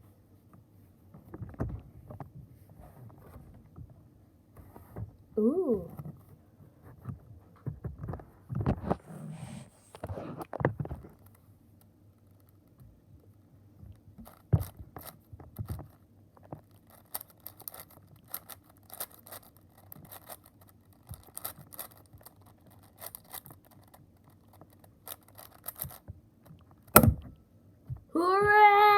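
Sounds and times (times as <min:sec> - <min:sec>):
puzzle cube clicking: 0:16.9 - 0:26.0.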